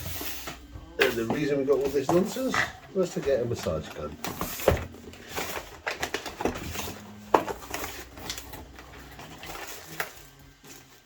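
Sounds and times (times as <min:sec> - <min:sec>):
packaging rustling: 0:03.5 - 0:11.0.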